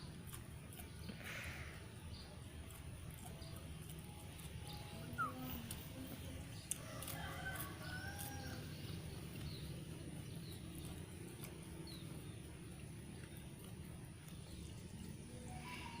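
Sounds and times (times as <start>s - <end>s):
rooster crowing: 6.8s - 8.8s.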